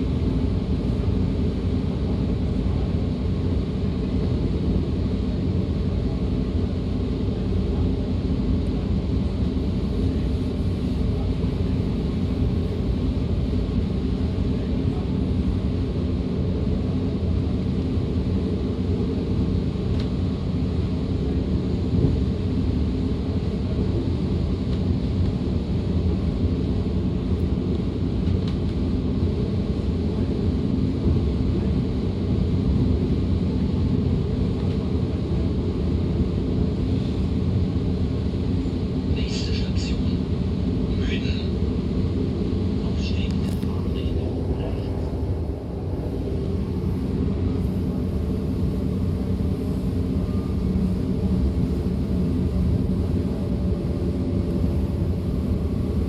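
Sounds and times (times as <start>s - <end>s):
steady train hum: 0.0s - 56.0s
wheels rumbling on rails: 42.0s - 56.0s.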